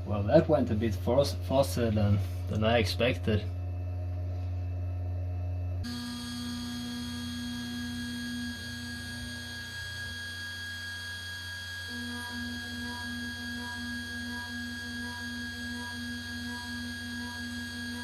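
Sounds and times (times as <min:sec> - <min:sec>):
low pulsing tone: 0:03.4 - 0:18.0
router spindle whine: 0:05.8 - 0:18.0.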